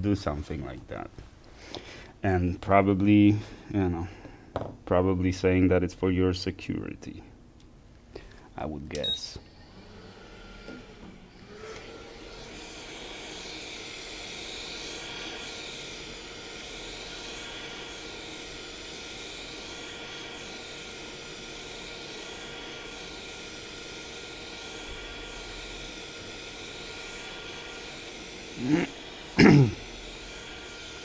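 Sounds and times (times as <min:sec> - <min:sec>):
fan running airy rush: 0:11.3 - 0:31.0.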